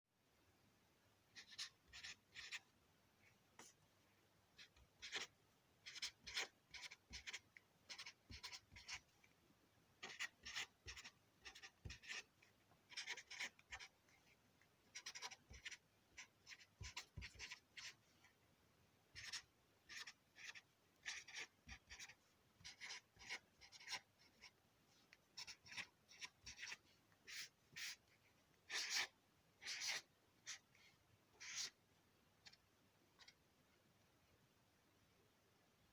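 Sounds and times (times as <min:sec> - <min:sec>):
marker squeaking on paper: 0:01.4 - 0:02.6, 0:04.6 - 0:09.0, 0:10.0 - 0:12.3, 0:12.9 - 0:13.9, 0:14.9 - 0:18.0, 0:19.2 - 0:24.5, 0:25.4 - 0:28.1, 0:28.7 - 0:31.8.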